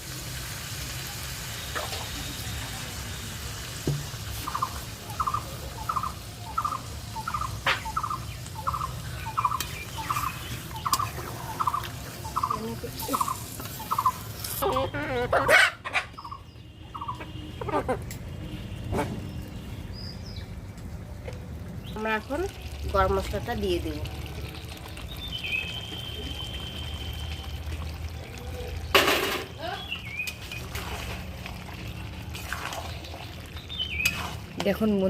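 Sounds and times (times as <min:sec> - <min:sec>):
bird rattling call: 0:04.5 - 0:14.6.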